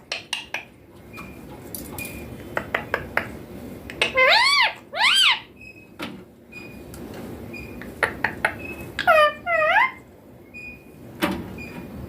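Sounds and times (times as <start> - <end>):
parrot calls: 3.9 - 5.6, 8.0 - 10.1.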